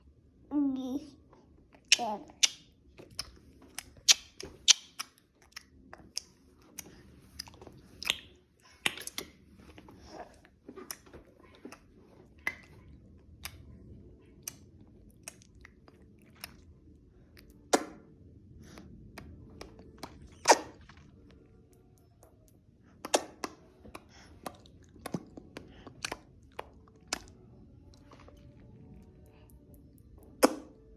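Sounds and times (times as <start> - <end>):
baby mouth clicks and smacks: 1.8 - 9.4, 10.7 - 12.8, 14.4 - 16.6, 17.4 - 18.0, 19.2 - 21.0, 23.0 - 27.3, 30.2 - 30.7.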